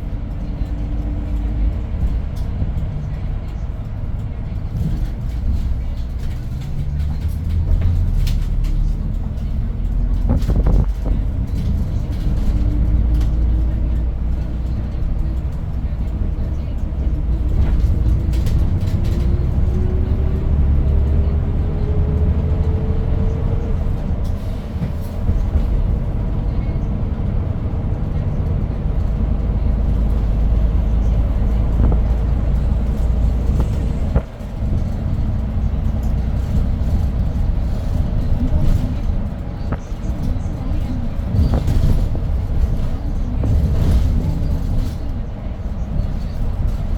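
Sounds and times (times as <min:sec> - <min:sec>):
bus engine rumble: 0:00.0 - 0:46.9.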